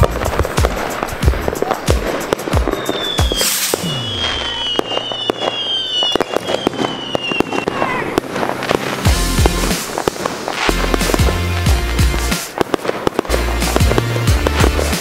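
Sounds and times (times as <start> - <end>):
fireworks bangs and booms: 0.0 - 15.0
falling firework whistle: 1.9 - 11.3.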